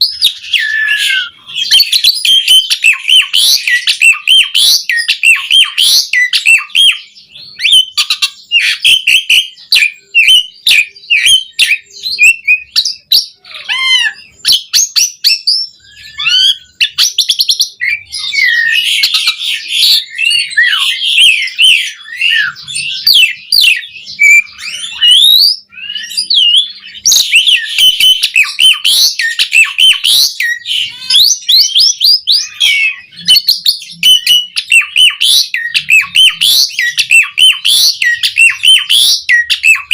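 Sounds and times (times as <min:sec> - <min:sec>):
starling singing: 0:00.0 - 0:39.9.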